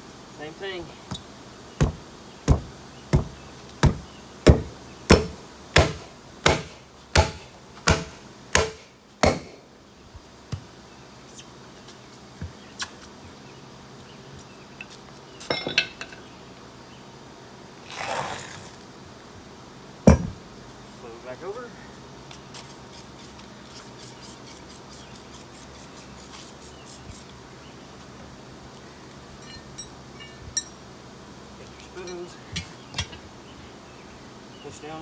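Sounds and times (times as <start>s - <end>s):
hammer striking tire on metal rim: 1.8s - 9.6s, 20.1s - 20.4s.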